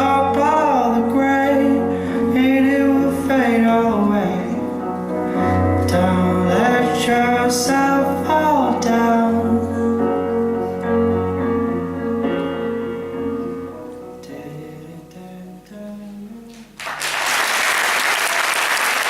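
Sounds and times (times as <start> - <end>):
slow song: 0.0 - 17.8
audience applause: 16.8 - 19.0.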